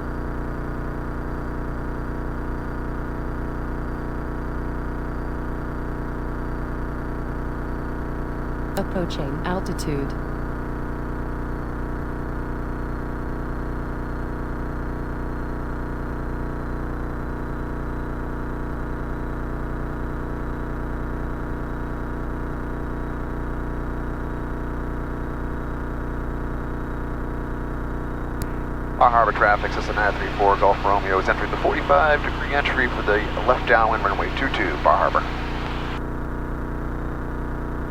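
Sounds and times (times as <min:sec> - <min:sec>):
propeller plane engine droning: 0:28.4 - 0:36.0.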